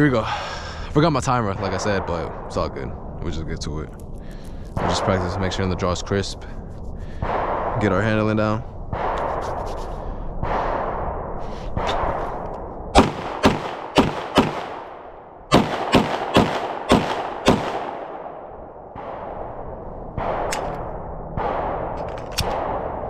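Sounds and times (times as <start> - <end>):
pistol gunshots with echo: 7.2 - 8.0, 8.8 - 9.6, 10.4 - 23.0.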